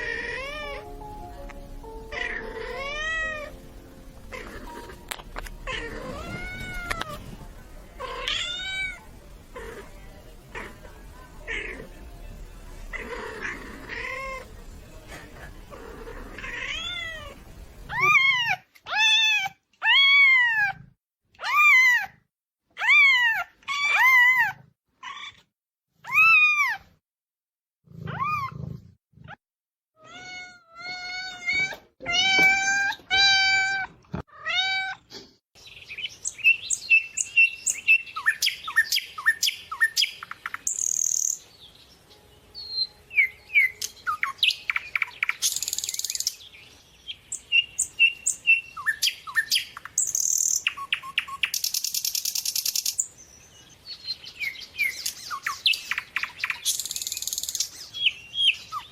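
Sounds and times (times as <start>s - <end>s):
cat meowing: 0.0s - 1.0s, 2.1s - 3.6s, 4.3s - 7.3s, 8.0s - 9.0s, 16.3s - 22.1s, 30.0s - 35.0s
background noise: 0.0s - 27.0s, 30.0s - 58.9s.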